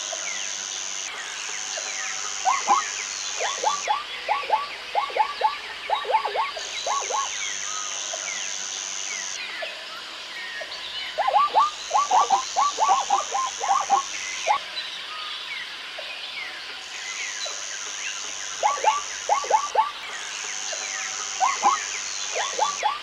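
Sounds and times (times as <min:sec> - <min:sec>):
steady high hiss: 0:00.0 - 0:23.0
small chirps: 0:21.2 - 0:23.0.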